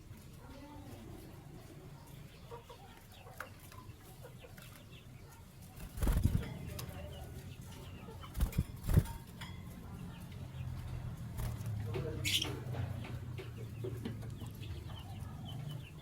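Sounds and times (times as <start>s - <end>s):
canaries chirping: 1.6s - 16.0s
wings flapping: 5.8s - 6.8s, 8.2s - 9.2s, 11.3s - 12.4s.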